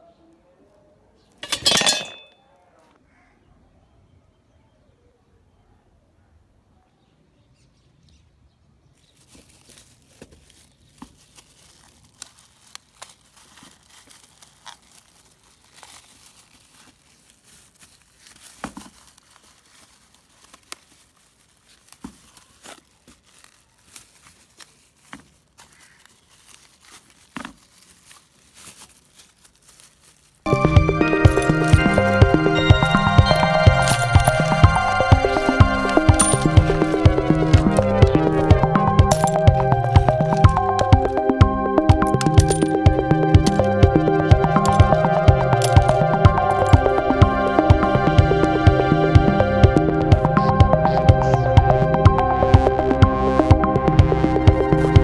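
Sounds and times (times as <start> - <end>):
hands clicking and crinkling: 9.0 - 48.0.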